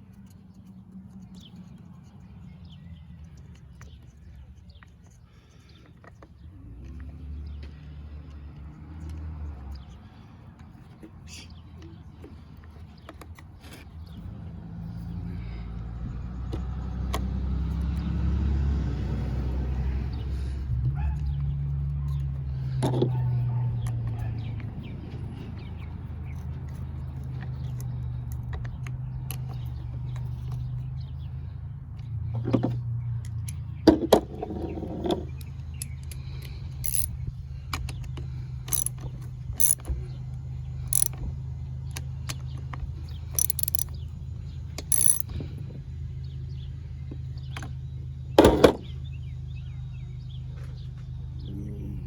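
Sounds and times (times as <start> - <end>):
metal tools clicking and clinking: 36.8 - 37.2, 38.7 - 39.9, 40.9 - 41.2, 43.3 - 44.0, 44.8 - 45.3.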